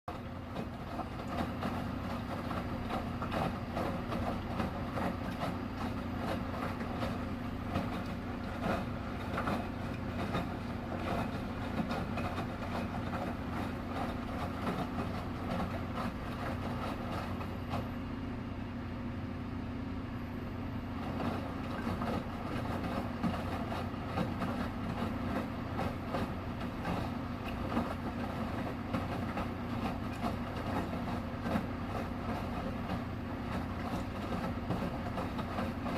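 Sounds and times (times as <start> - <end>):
washing machine humming: 0.0 - 35.9
washing machine clicks and knocks: 0.1 - 17.9, 21.0 - 35.9.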